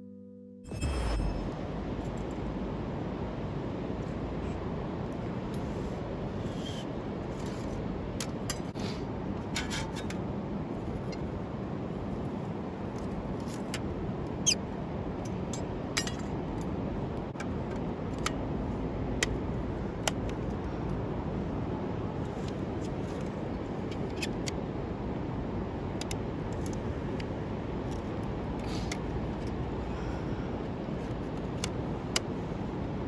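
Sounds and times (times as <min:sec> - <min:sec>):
low fire rumble: 0:00.7 - 0:23.9.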